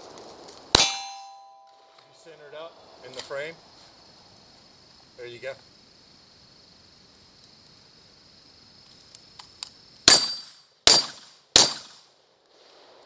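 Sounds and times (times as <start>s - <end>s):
crickets chirring: 0.0s - 13.0s
sharp gunshots: 0.7s - 1.4s, 10.0s - 12.1s.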